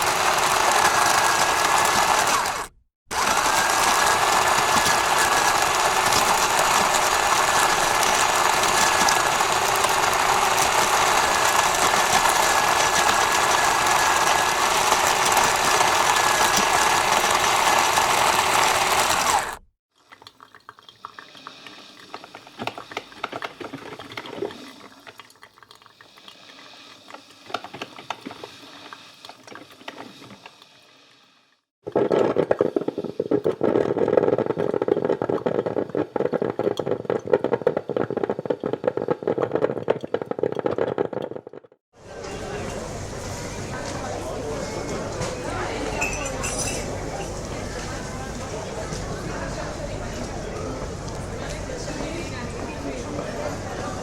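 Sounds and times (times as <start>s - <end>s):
coffee machine whirring hiss: 0.0s - 19.6s, 26.0s - 31.5s, 42.0s - 54.0s
cups and utensils clinking: 3.5s - 19.3s, 42.1s - 54.0s.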